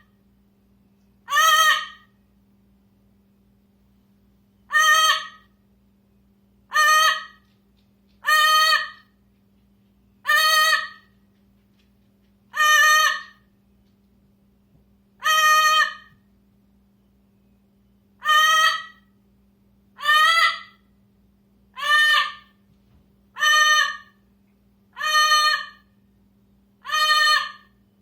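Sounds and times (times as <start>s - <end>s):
faint steady hum: 0.0s - 28.0s
bird calls: 26.8s - 27.9s.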